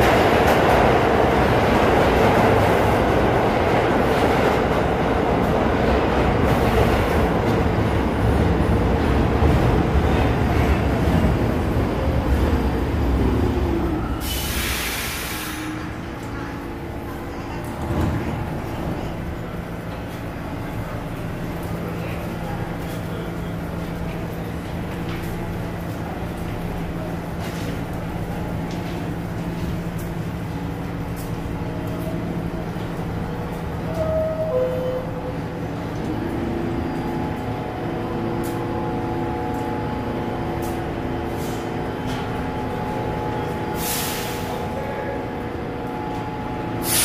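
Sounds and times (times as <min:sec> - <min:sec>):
subway train motor hum: 0:00.0 - 0:47.0
air hissing: 0:14.2 - 0:15.8.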